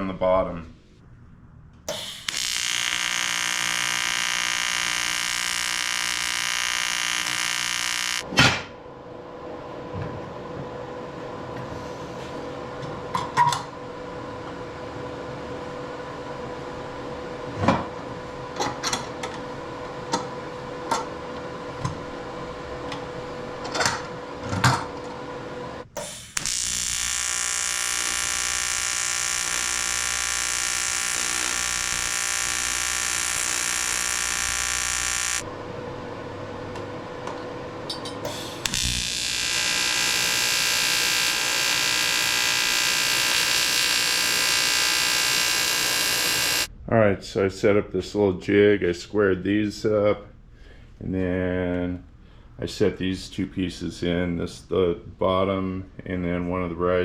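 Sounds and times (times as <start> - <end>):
steady hum: 0.0 - 9.9, 13.8 - 48.2
welder arc buzzing: 1.9 - 8.3, 25.8 - 35.6, 38.2 - 46.7.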